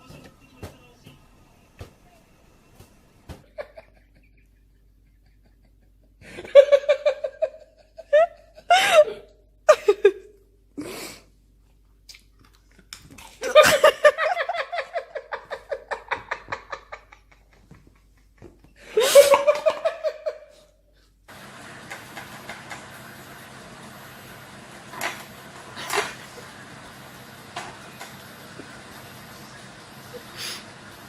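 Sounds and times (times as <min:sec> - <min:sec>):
person laughing hard: 0:03.5 - 0:10.4, 0:13.4 - 0:20.7.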